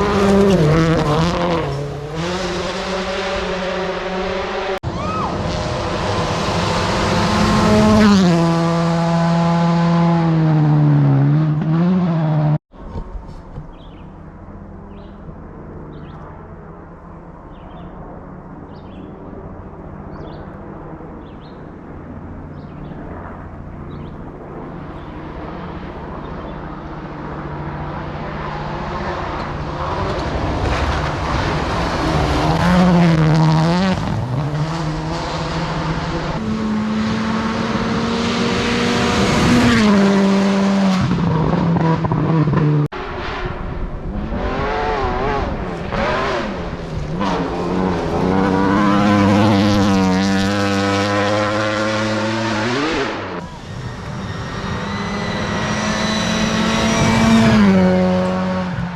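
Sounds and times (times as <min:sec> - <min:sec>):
rally car engine revving: 0:00.0 - 0:04.8, 0:05.4 - 0:13.1, 0:24.0 - 0:58.9.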